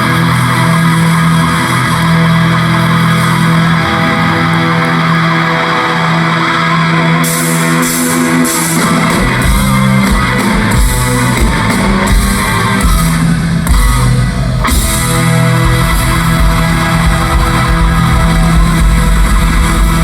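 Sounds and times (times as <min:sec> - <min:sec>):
bass guitar: 0:00.0 - 0:20.0
distorted electric guitar: 0:00.0 - 0:20.0
drum kit: 0:07.2 - 0:20.0.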